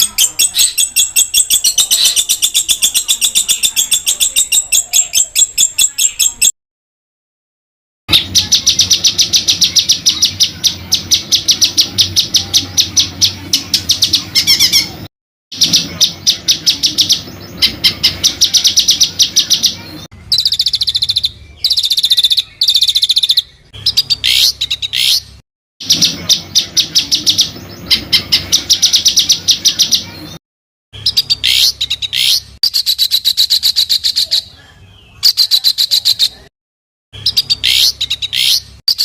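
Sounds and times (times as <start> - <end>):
songbird rapid rolling notes: 8.1 - 25.1, 25.8 - 30.4.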